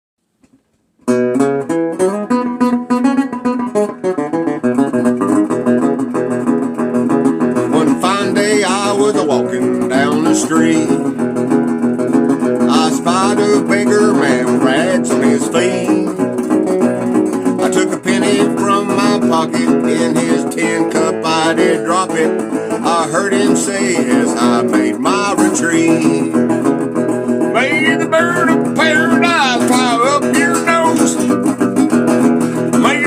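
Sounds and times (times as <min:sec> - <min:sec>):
acoustic guitar strumming: 0:00.5 - 0:33.0
wavering higher melody line: 0:27.5 - 0:31.3.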